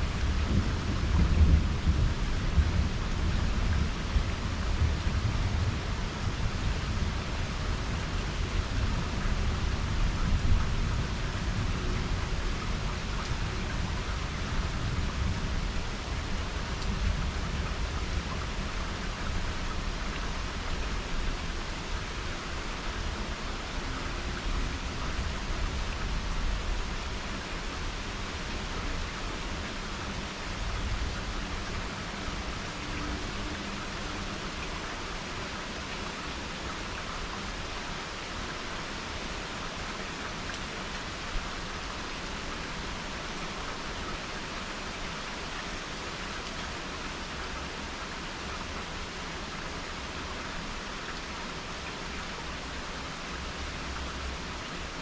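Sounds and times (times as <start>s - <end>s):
thunder rumble: 0.0s - 7.2s
steady rain: 0.0s - 55.0s.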